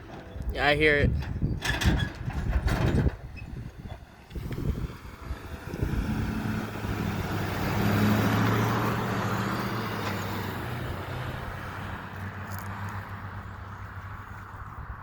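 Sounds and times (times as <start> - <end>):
vehicle driving past: 4.1 - 15.0.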